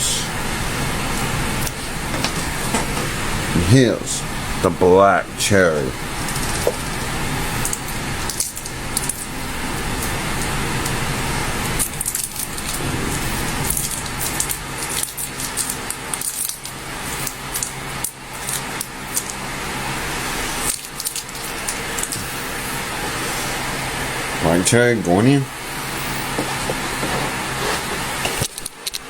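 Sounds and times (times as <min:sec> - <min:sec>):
steady background hum: 0:00.0 - 0:29.0
clicks and rattles of handled object: 0:28.4 - 0:29.0.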